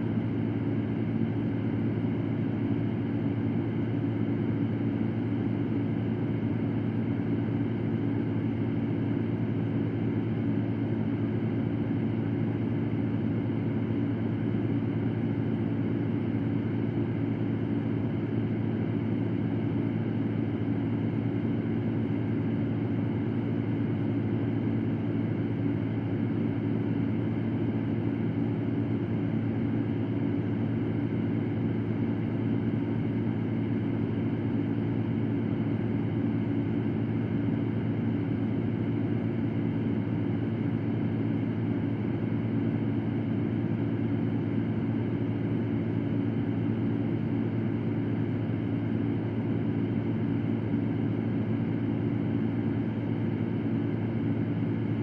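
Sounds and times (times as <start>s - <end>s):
electric fan running: 0.0s - 55.0s.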